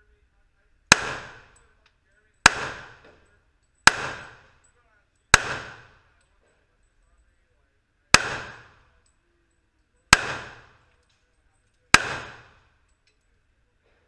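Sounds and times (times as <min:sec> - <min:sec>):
gunshots with echo: 0:00.9 - 0:01.6, 0:02.4 - 0:03.2, 0:03.9 - 0:04.6, 0:05.3 - 0:06.1, 0:08.1 - 0:08.9, 0:10.1 - 0:10.9, 0:11.9 - 0:12.7.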